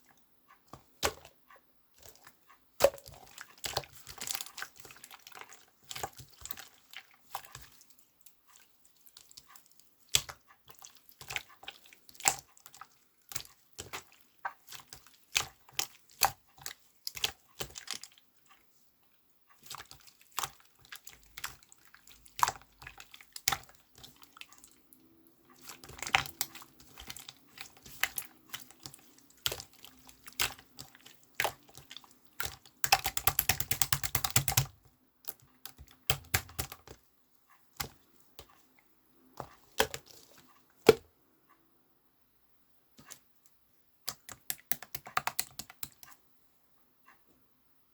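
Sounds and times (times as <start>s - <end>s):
sharp clicks and taps: 32.8s - 34.8s, 44.1s - 46.2s.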